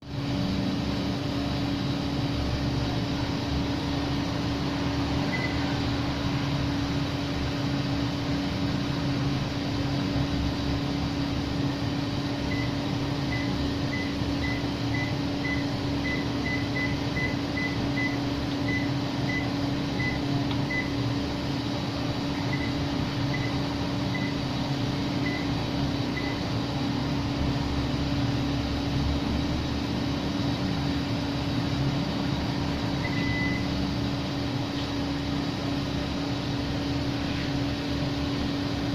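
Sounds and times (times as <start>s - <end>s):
air conditioner humming: 0.0s - 38.9s
short high beeps: 33.0s - 33.7s.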